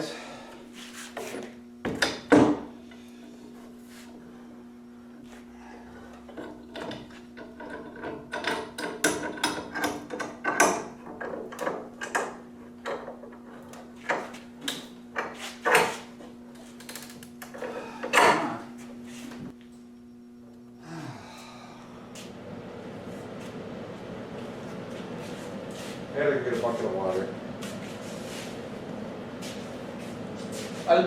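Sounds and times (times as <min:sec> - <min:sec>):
steady low hum: 0:00.0 - 0:31.0
clamps clicking and clanking: 0:06.2 - 0:16.0.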